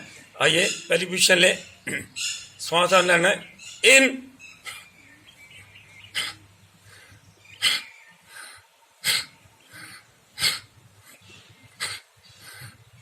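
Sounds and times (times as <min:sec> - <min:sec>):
forceful rhythmic nasal breathing: 0:04.6 - 0:05.0, 0:06.1 - 0:13.0.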